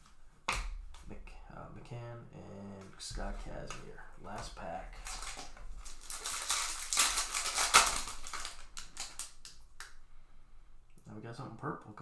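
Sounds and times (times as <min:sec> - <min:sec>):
foil wrapper crinkling: 0:05.0 - 0:10.0.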